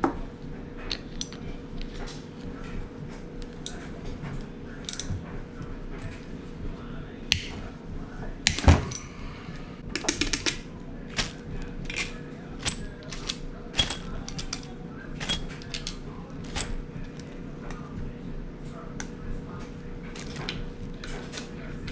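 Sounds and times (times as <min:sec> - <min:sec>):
tools clinking against metal: 0:00.9 - 0:02.0, 0:03.5 - 0:05.3, 0:10.0 - 0:17.8.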